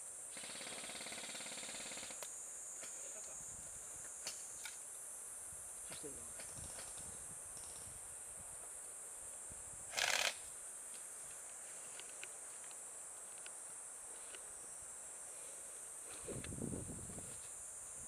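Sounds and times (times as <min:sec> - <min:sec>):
insects buzzing: 0:00.0 - 0:18.0
faint ticks: 0:10.9 - 0:13.6.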